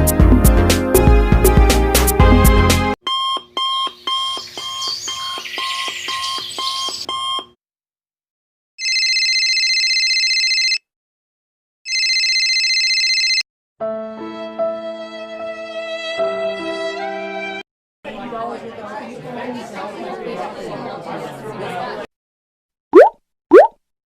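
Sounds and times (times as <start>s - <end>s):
electronic alarm clock ringing: 3.1s - 7.5s, 8.8s - 10.8s, 11.9s - 13.4s.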